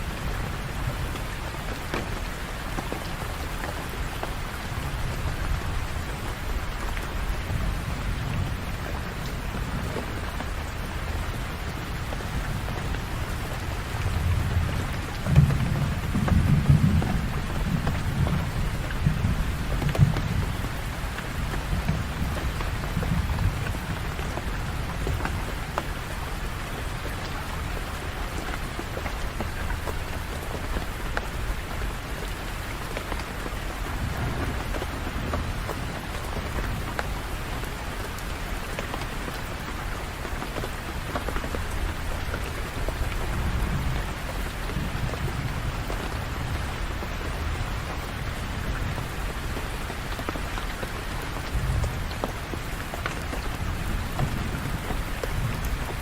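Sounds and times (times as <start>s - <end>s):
heavy rain pattering: 0.0s - 56.0s.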